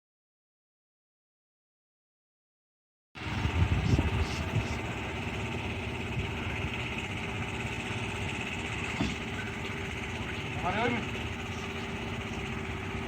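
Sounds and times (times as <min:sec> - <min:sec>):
engine idling: 0:03.2 - 0:13.0.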